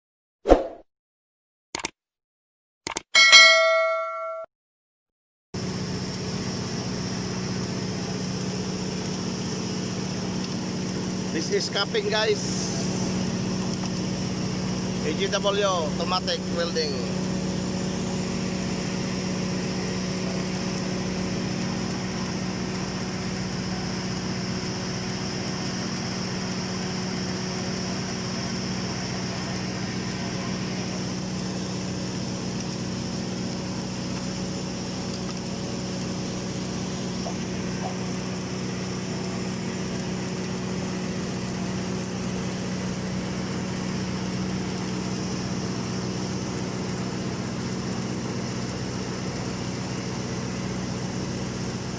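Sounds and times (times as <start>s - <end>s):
welding machine low hum: 5.6s - 51.9s
steady welding hiss: 9.2s - 17.1s.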